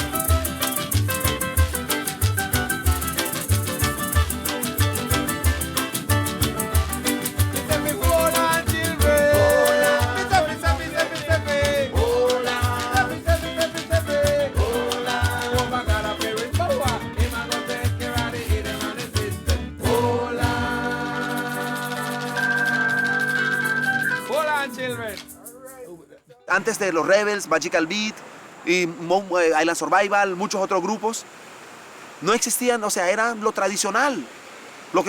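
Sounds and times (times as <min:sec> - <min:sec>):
upbeat dance-band music: 0:00.0 - 0:25.3.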